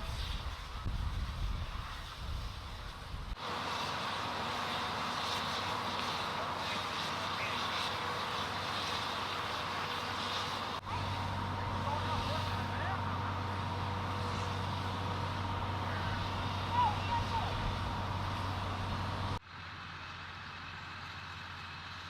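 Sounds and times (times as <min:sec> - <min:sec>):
fire engines running: 0:00.0 - 0:22.0
low rumble: 0:10.9 - 0:19.4.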